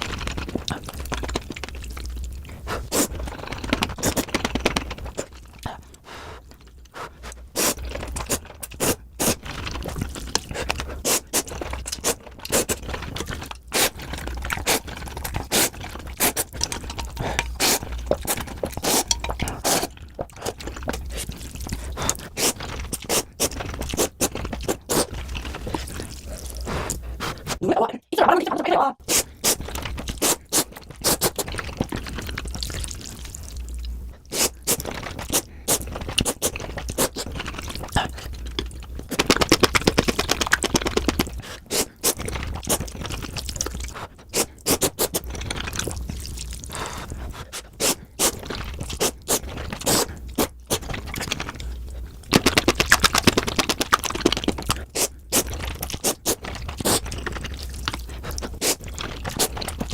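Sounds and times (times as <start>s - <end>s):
sped-up noodle eating sounds: 0.0s - 59.9s.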